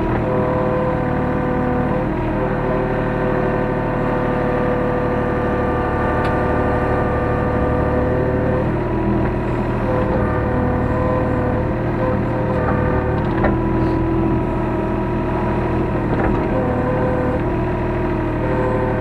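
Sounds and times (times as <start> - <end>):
diesel engine running: 0.0 - 19.0
steady tones: 7.4 - 14.6.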